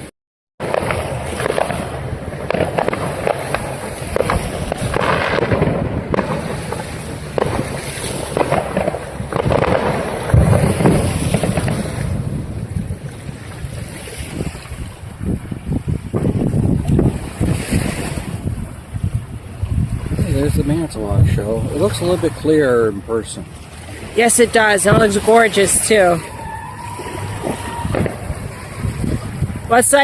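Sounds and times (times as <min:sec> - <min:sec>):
fireworks bangs and pops: 0:00.0 - 0:22.6, 0:24.1 - 0:30.0
low firework boom: 0:00.6 - 0:13.2, 0:15.2 - 0:17.6, 0:26.3 - 0:29.7.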